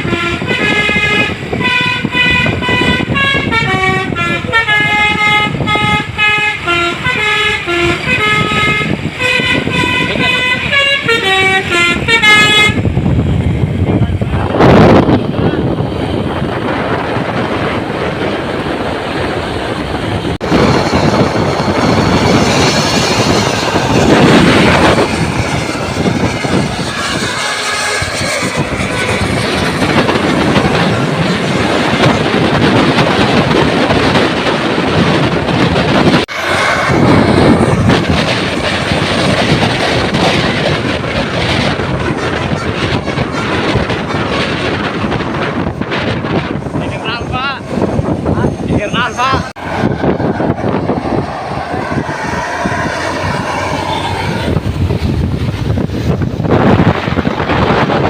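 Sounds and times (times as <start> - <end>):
bus melody horn: 0.0 - 13.0, 26.3 - 29.9, 42.0 - 44.3
engine and road rumble: 0.0 - 58.0
heavy vehicle passing: 0.1 - 34.0, 35.6 - 58.0.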